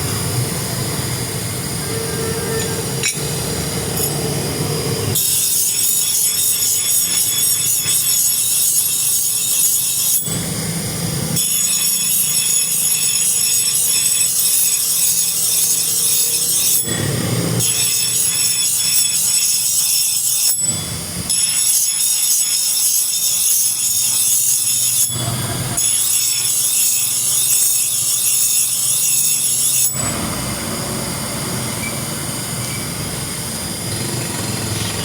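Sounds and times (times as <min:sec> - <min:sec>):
abrasive tool scraping metal: 0:01.8 - 0:10.6, 0:11.3 - 0:30.6.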